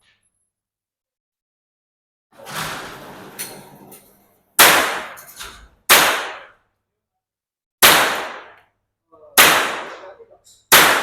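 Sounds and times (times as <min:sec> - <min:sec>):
rifle shots: 0:04.6 - 0:05.2, 0:05.9 - 0:06.6, 0:07.8 - 0:08.6, 0:09.4 - 0:10.1, 0:10.7 - 0:11.0.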